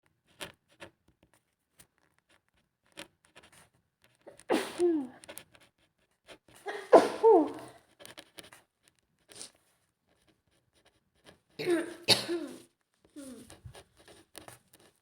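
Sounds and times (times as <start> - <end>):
faint ticks and scratches: 0.0 - 4.5, 5.1 - 6.7, 7.7 - 11.6, 12.6 - 15.0
woman sneezing: 4.3 - 5.2, 6.7 - 7.7, 11.6 - 12.6.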